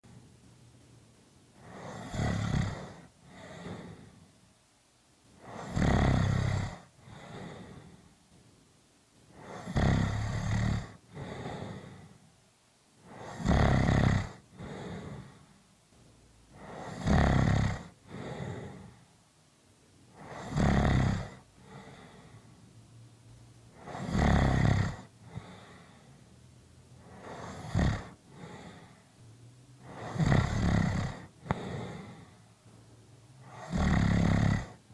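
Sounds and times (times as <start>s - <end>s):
quiet breath sounds: 0.0s - 34.9s
loud rattling snores: 1.6s - 4.0s, 5.4s - 6.9s, 9.4s - 11.5s, 13.1s - 15.2s, 16.6s - 18.7s, 20.2s - 21.5s, 23.8s - 25.5s, 27.0s - 28.8s, 29.8s - 32.2s, 33.4s - 34.8s.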